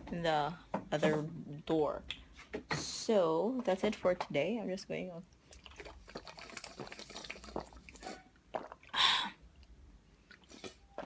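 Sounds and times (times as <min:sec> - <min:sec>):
person eating and drinking: 0:05.4 - 0:11.0.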